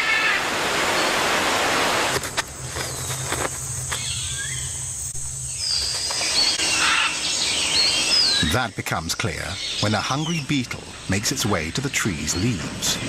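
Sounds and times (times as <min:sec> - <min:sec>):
high gliding animal calls: 0:05.5 - 0:13.0.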